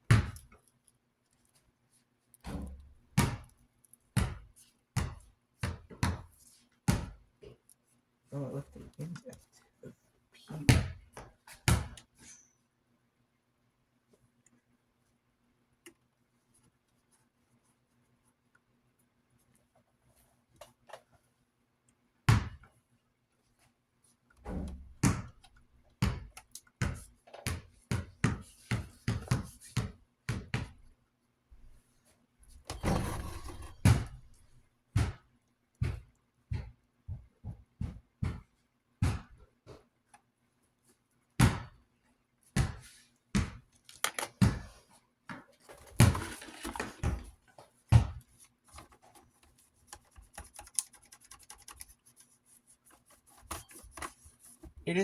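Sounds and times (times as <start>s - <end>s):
rubbing or scrubbing: 32.8s - 33.9s.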